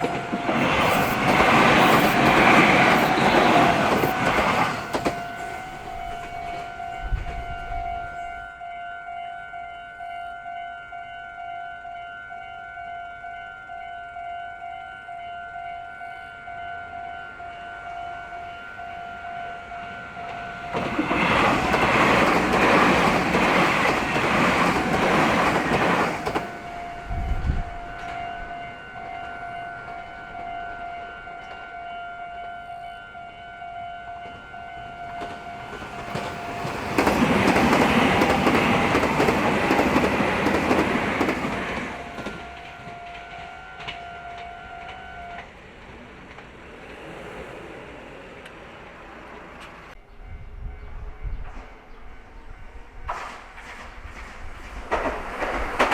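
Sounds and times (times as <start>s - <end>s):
train wheels clattering over rails: 0.0s - 6.6s, 20.7s - 26.6s, 35.2s - 47.8s, 53.1s - 55.9s
railroad crossing bell ringing: 0.0s - 45.6s.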